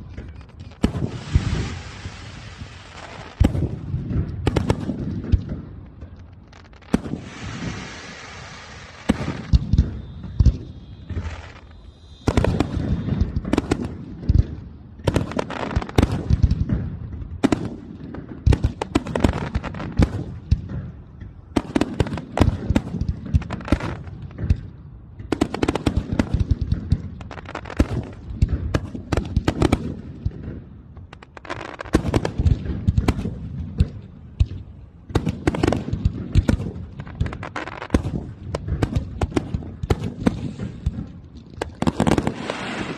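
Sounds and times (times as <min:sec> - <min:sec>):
firework launches: 0:00.0 - 0:24.7, 0:34.3 - 0:42.9
fireworks booming bursts: 0:00.0 - 0:42.9
fireworks crackling: 0:00.0 - 0:42.9.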